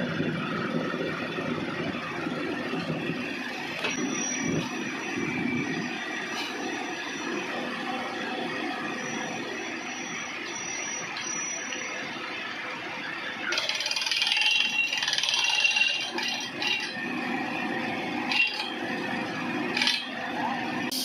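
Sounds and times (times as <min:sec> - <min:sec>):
air drilling rig rattling: 0:13.5 - 0:20.2.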